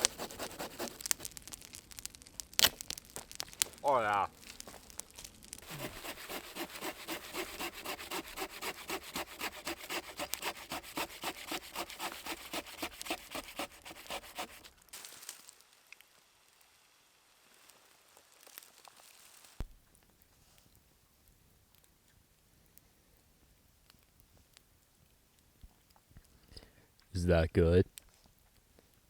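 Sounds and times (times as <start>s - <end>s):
sawing strokes: 0.0s - 1.3s, 5.6s - 14.7s.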